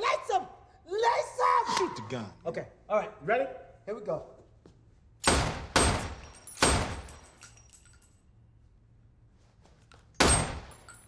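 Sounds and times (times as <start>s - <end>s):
gunshots: 5.2s - 7.1s, 10.2s - 10.7s.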